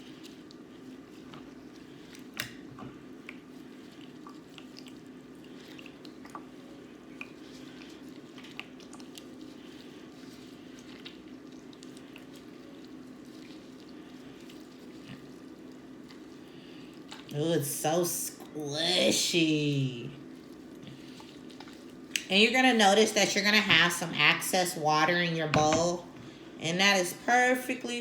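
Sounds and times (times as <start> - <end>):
slime squelching: 0.0 - 25.6
steady low hum: 0.0 - 28.0.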